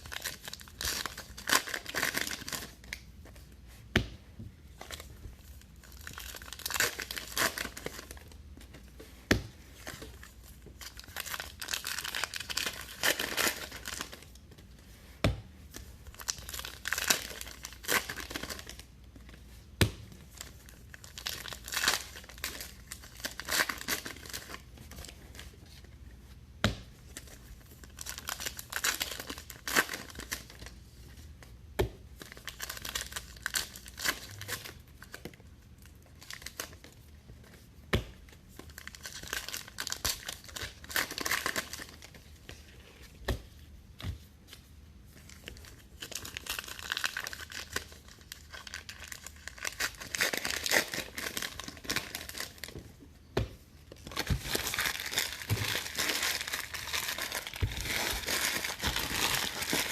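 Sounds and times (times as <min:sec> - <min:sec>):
wrappers tearing and crinkling: 0:05.8 - 0:08.3, 0:10.8 - 0:14.2, 0:27.9 - 0:30.6, 0:38.7 - 0:42.2, 0:45.6 - 0:52.7, 0:54.1 - 0:59.9.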